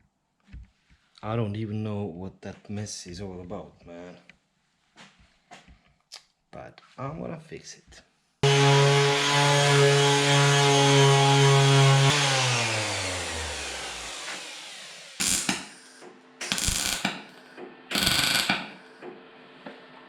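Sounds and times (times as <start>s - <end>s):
angle grinder winding down: 8.4s - 17.2s, 17.9s - 18.7s
welding crackling bursts: 15.2s - 18.9s.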